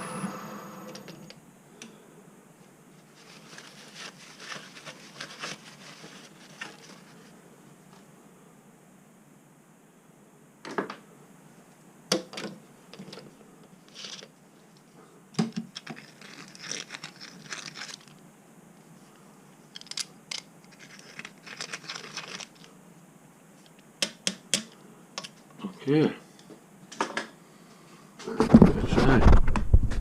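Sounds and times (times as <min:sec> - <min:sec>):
metal parts clicking and knocking: 0:19.7 - 0:22.5.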